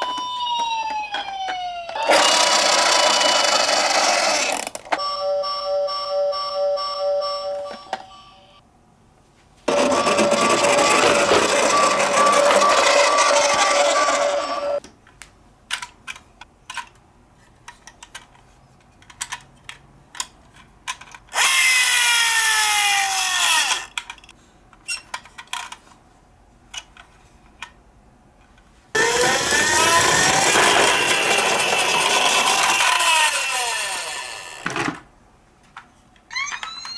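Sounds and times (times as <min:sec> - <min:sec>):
toy car whirring rattle: 0:02.0 - 0:04.8, 0:09.7 - 0:14.8, 0:21.0 - 0:24.1, 0:29.0 - 0:34.7.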